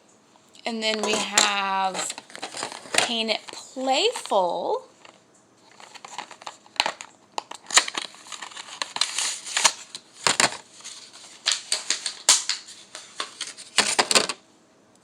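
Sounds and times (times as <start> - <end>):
packaging crinkling and rustling: 0.9 - 14.4
plastic packaging clicks: 5.0 - 14.4.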